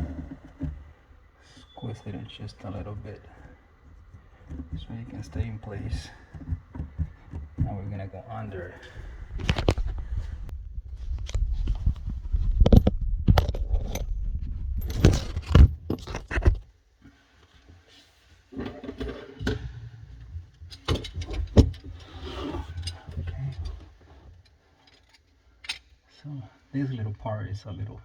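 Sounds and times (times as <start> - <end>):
handling bumps and rumbling: 0.0 - 16.7
metal parts clinking: 14.8 - 16.4.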